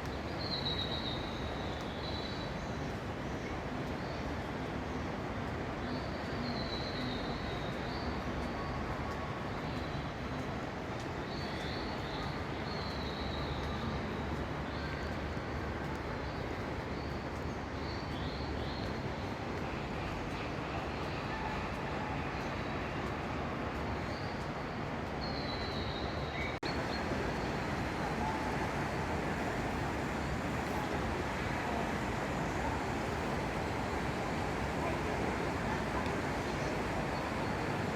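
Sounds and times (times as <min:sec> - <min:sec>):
steady rushing background noise: 0:12.3 - 0:37.9.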